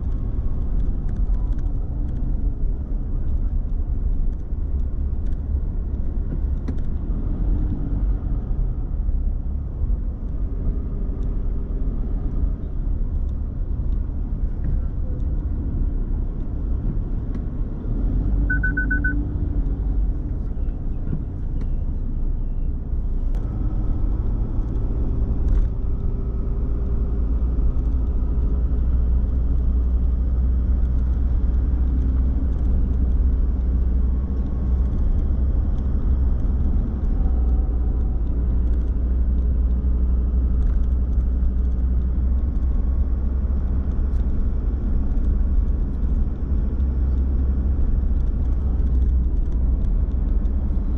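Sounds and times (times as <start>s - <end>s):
car engine and road noise: 0.0s - 50.9s
short high-pitched beeps: 18.5s - 19.2s.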